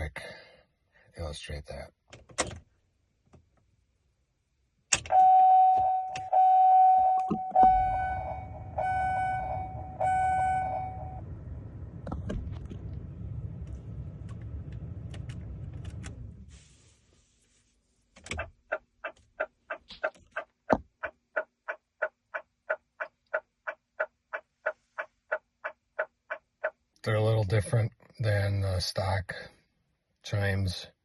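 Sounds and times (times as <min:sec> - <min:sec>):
door chime dings: 0:05.1 - 0:11.2
low steady rumble: 0:05.3 - 0:17.6.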